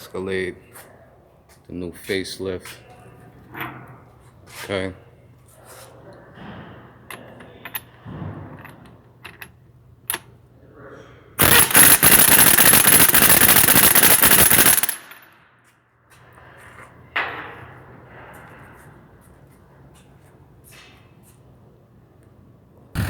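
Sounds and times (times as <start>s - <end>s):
impact wrench hammering: 11.4s - 15.3s.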